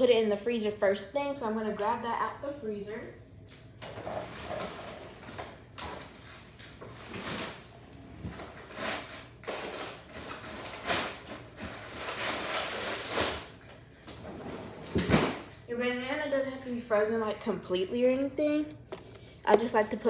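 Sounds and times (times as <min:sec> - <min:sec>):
freezer drawer sliding: 0:03.9 - 0:13.6, 0:14.2 - 0:15.5.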